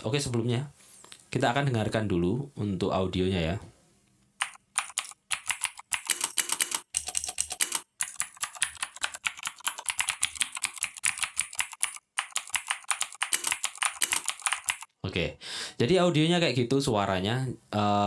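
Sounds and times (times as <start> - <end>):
clicky mechanical keystrokes: 10.7 - 14.9.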